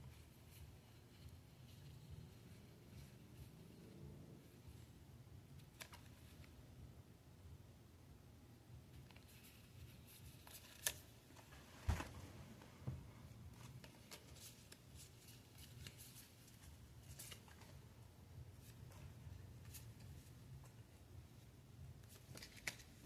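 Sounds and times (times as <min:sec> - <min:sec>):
cards rustling and clicking: 0:05.6 - 0:06.6, 0:09.0 - 0:21.1, 0:22.0 - 0:23.0.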